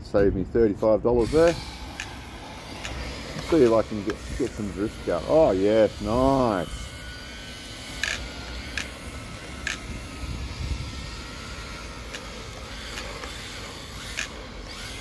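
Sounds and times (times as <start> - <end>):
tyres hissing: 1.2 - 10.4
faint electric motor whine: 1.2 - 15.0
sharp clicks: 1.9 - 4.2, 8.0 - 9.0, 9.6 - 9.8, 14.1 - 14.4.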